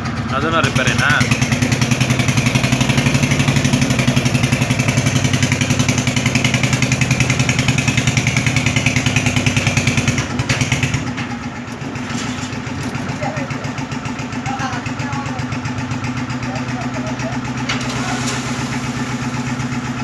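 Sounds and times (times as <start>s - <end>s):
concrete mixer engine running: 0.0s - 20.0s.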